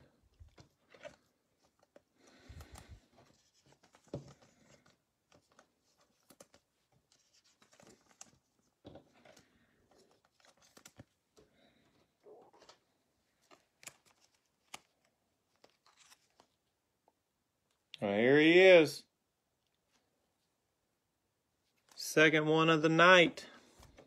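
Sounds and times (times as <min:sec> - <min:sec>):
trading cards rustling: 0:00.1 - 0:16.8.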